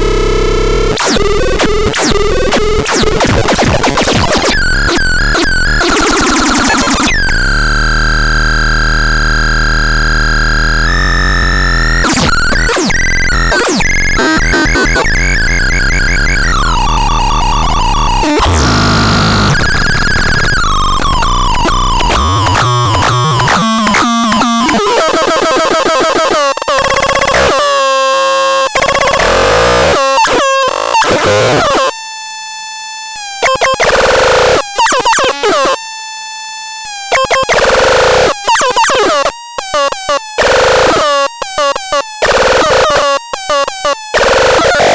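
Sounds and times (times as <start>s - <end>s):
synthesizer warbling and buzzing: 0.0s - 26.0s.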